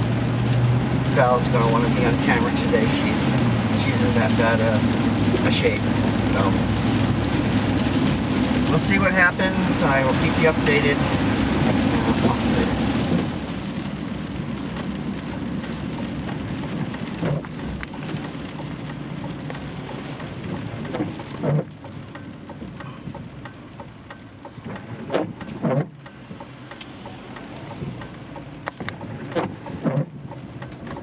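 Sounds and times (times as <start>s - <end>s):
steady rain falling: 0.0s - 31.0s.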